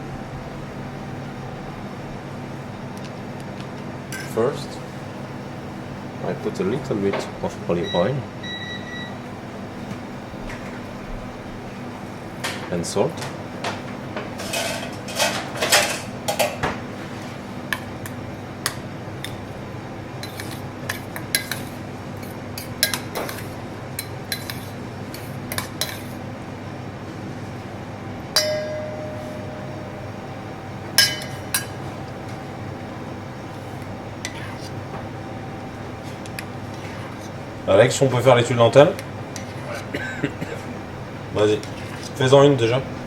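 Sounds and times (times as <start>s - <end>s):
steady background hum: 0.0s - 43.0s
dishes and utensils clinking: 12.4s - 16.7s, 28.4s - 29.8s, 31.0s - 31.8s.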